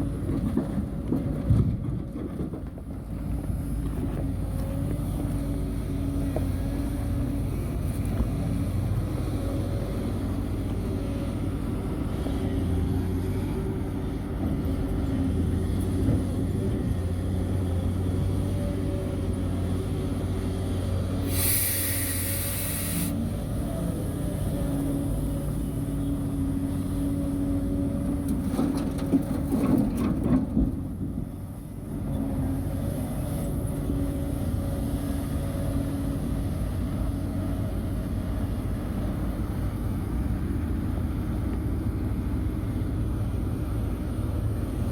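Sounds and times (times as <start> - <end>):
diesel engine of heavy machinery: 0.0 - 44.9
air release hiss: 21.2 - 23.2
metal clanks and knocks: 28.3 - 30.8.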